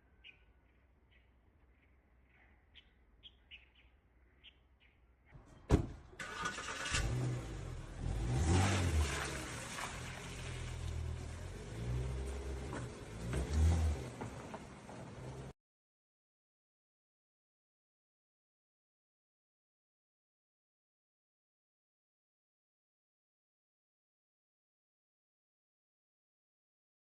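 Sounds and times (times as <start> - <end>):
car engine starting and revving: 6.2 - 15.5.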